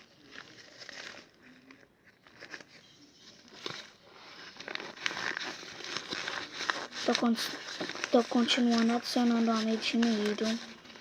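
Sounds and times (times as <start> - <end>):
slime stirred with sticky crackles: 4.6 - 10.6.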